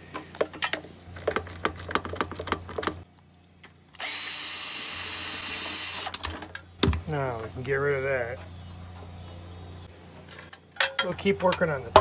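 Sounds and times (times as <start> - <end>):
power tool running: 4.0 - 6.2.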